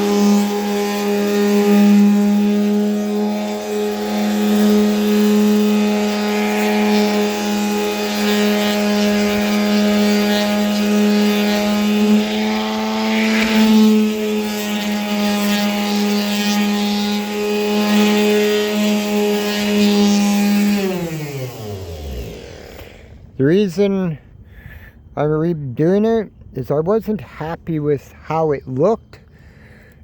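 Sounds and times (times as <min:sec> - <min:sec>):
power sander running: 0:00.0 - 0:23.4.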